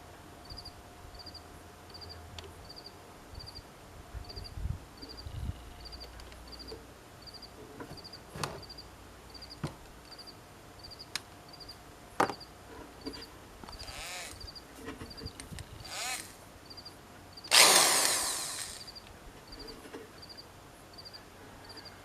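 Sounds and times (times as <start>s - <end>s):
insect chirping: 0.4s - 22.0s
electric drill motor spinning: 13.7s - 14.5s, 15.8s - 16.4s, 17.5s - 18.9s.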